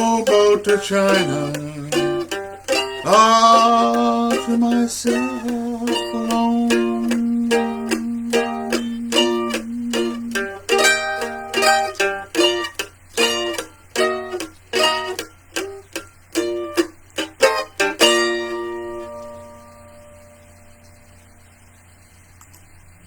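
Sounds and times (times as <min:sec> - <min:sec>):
held note: 0:00.0 - 0:12.5
plucked string instrument strumming: 0:00.0 - 0:21.3.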